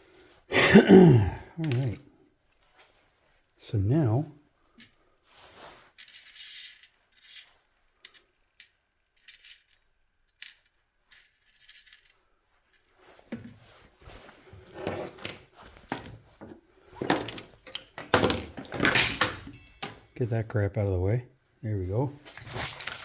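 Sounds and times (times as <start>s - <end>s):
tools handled on workbench: 1.6s - 2.0s, 13.1s - 20.2s.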